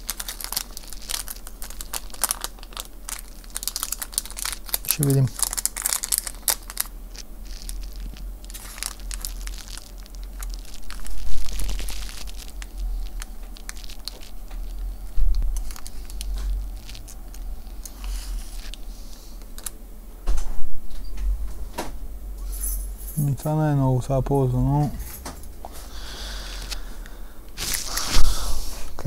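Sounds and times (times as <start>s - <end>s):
plastic bags crinkling: 0.0s - 18.8s, 27.6s - 28.4s
low electrical hum: 0.0s - 29.0s.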